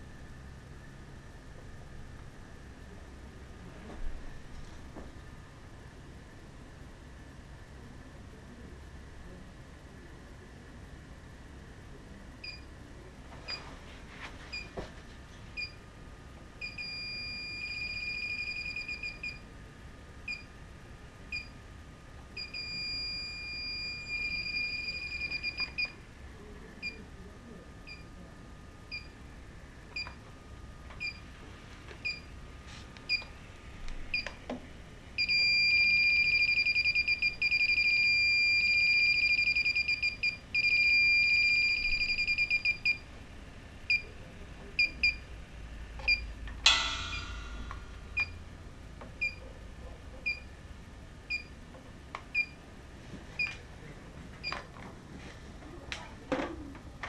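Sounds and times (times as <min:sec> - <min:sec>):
leak detector beeping: 0:16.6 - 0:19.4, 0:22.4 - 0:25.9, 0:35.2 - 0:43.0.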